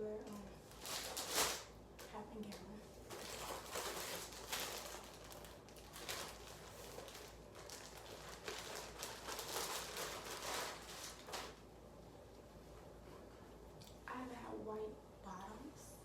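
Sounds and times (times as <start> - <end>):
plastic packaging rustling: 0.2 - 11.6.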